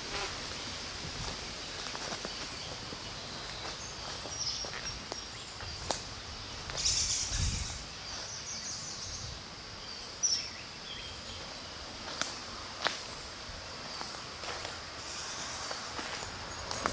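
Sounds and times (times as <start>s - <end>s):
high insect hum: 0.0s - 16.9s
birds chirping: 1.5s - 16.9s.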